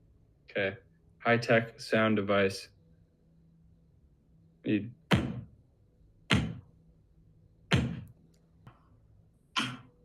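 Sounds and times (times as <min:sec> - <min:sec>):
hand thumping wooden tabletop: 0:06.3 - 0:06.7, 0:07.7 - 0:08.2.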